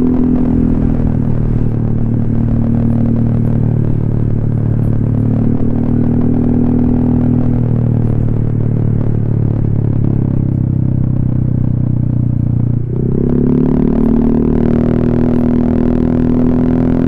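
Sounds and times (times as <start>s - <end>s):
scooter engine running: 0.0s - 17.0s.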